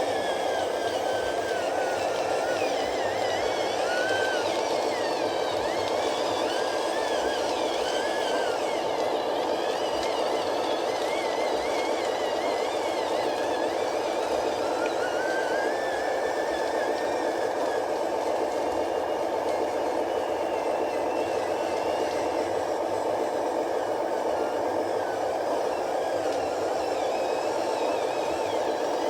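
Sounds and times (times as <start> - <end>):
small electric motors whining: 0.0 - 29.0.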